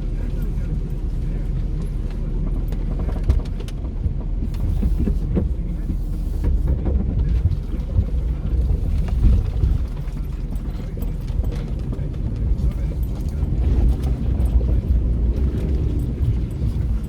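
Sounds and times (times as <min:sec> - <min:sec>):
low engine rumble: 0:00.0 - 0:17.0
vehicle body knocks and jolts: 0:06.5 - 0:17.0.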